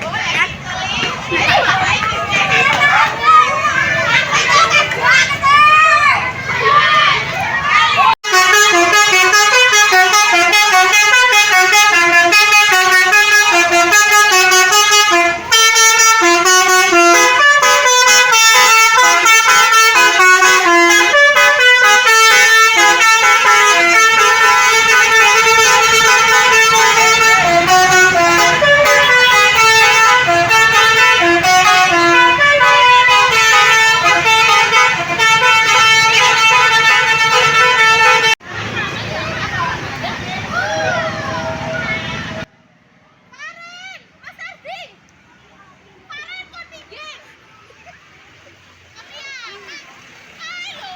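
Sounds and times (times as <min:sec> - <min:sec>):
musical bus horn playing tune: 0:08.2 - 0:38.4.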